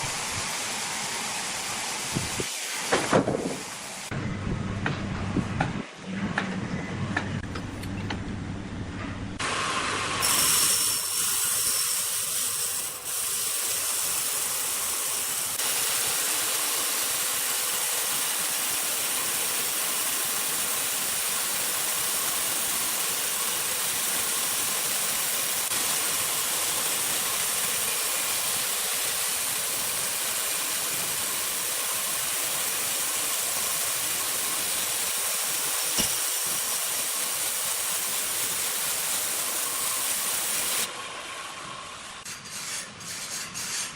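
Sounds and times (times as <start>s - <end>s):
steady hiss: 0.0s - 4.1s, 10.2s - 40.9s.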